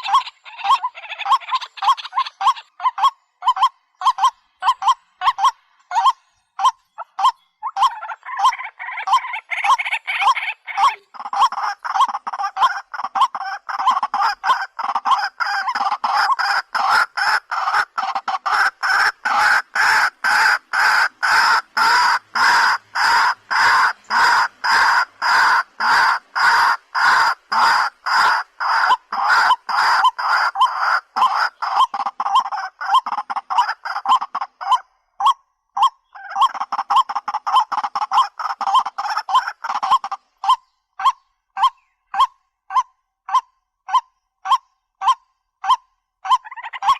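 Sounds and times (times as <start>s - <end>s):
waterhen calling harsh notes: 0.0s - 46.9s.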